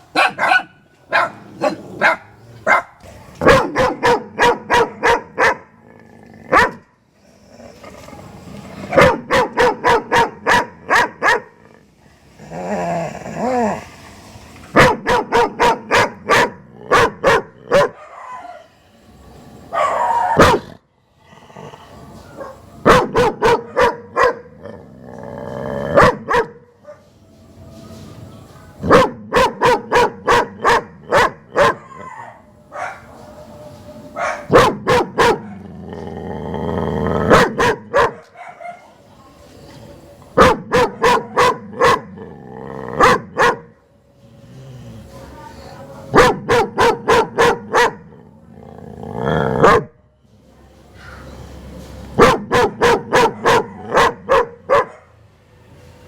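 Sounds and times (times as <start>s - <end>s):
dog barking: 0.1s - 5.7s, 6.5s - 6.8s, 8.9s - 11.6s, 14.8s - 18.7s, 19.7s - 20.7s, 22.4s - 24.5s, 25.9s - 27.1s, 28.6s - 33.1s, 34.2s - 35.6s, 37.3s - 38.9s, 40.4s - 42.1s, 42.9s - 43.8s, 46.1s - 48.1s, 49.6s - 50.0s, 52.2s - 55.2s.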